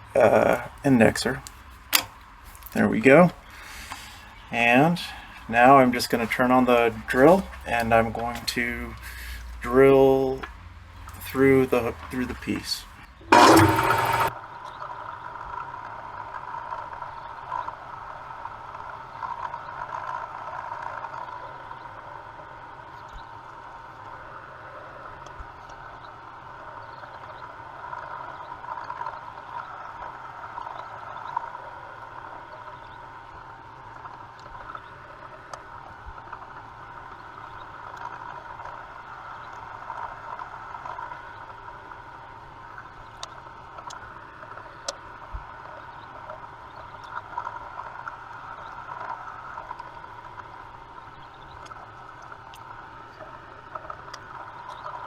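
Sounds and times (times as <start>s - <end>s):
drill boring through metal: 13.2s - 14.3s.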